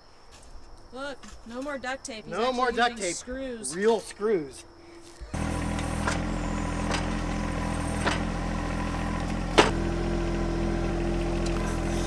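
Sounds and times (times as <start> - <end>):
tractor diesel engine running: 5.4 - 12.0.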